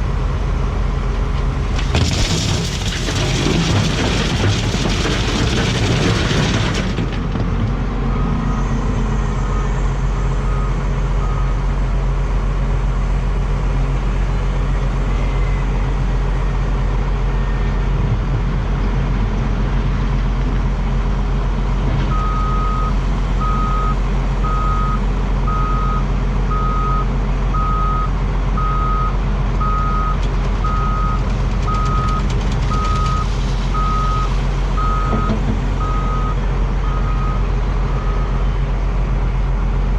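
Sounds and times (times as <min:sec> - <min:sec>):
diesel engine running: 0:00.0 - 0:39.9
truck reverse alarm beeping: 0:09.4 - 0:11.7, 0:22.1 - 0:38.4.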